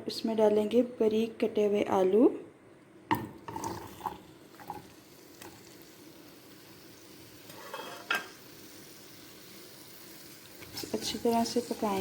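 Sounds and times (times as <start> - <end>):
potatoes sizzling in oil: 3.8 - 12.0.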